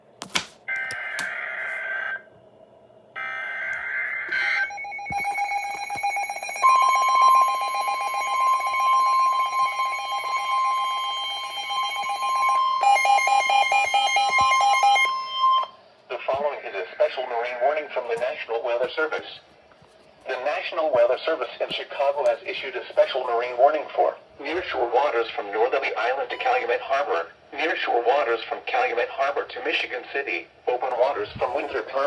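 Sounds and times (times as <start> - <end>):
pulsing alarm tone: 3.2 - 15.8
steady high warning tone: 3.2 - 18.0.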